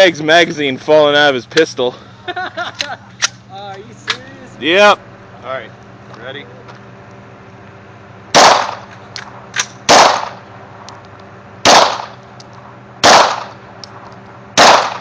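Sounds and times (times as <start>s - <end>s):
pistol shots with echo: 8.3s - 8.9s, 9.6s - 10.5s, 11.6s - 12.2s, 13.0s - 13.6s, 14.6s - 15.0s.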